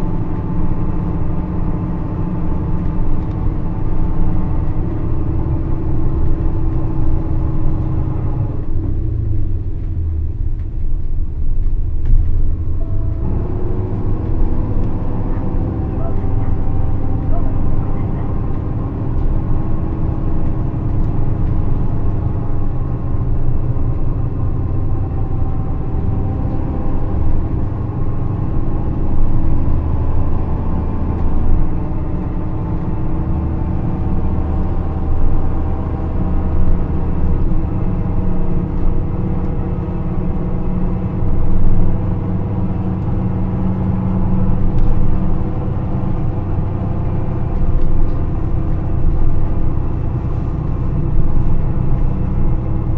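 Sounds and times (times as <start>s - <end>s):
bus diesel engine running: 0.0s - 52.9s.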